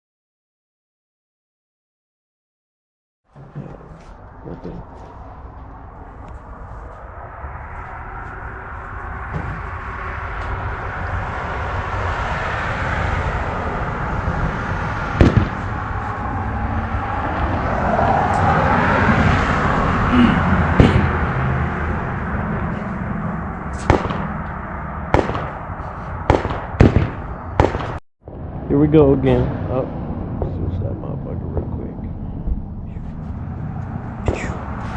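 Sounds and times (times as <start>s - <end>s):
vehicle running: 3.3s - 34.9s
loud gunshot cracks: 15.2s - 15.7s, 20.8s - 21.2s, 23.8s - 24.3s, 25.1s - 25.6s, 26.3s - 28.0s, 34.3s - 34.6s.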